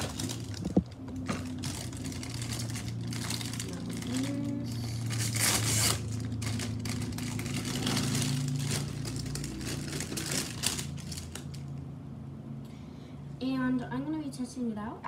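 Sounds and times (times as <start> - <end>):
plastic packaging crinkling and tearing: 0.0 - 11.8.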